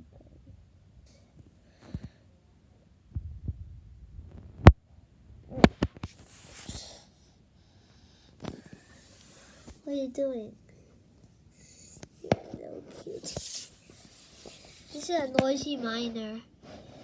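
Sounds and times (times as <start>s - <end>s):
rustling hiss: 6.0s - 7.2s, 8.5s - 10.0s, 11.6s - 16.3s.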